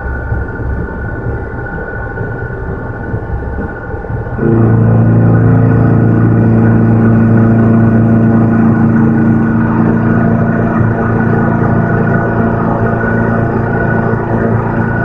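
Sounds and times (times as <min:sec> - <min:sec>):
milling machine humming: 0:04.4 - 0:15.0.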